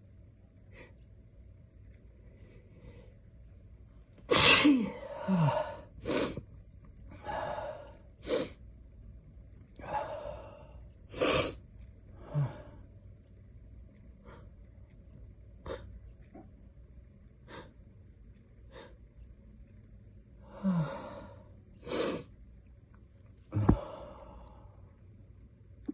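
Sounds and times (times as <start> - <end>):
man sneezing: 4.3 - 5.1.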